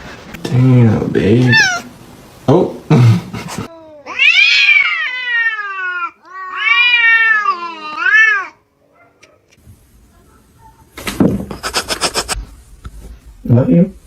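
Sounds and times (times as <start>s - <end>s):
cat meowing: 1.4s - 1.9s, 3.7s - 8.6s.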